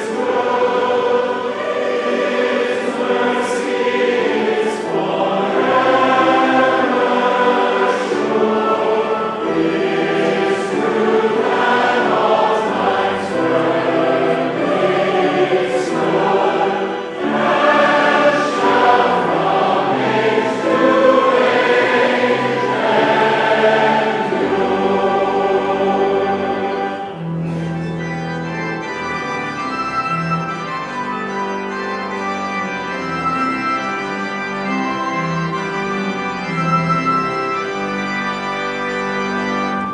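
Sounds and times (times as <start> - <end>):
choir singing: 0.0 - 31.3
organ playing: 0.0 - 39.9.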